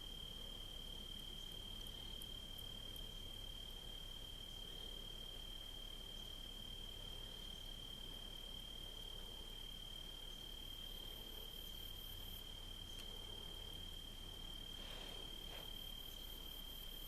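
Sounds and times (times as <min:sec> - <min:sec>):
crickets trilling: 0:00.0 - 0:17.0
faint outdoor hiss: 0:00.0 - 0:17.0.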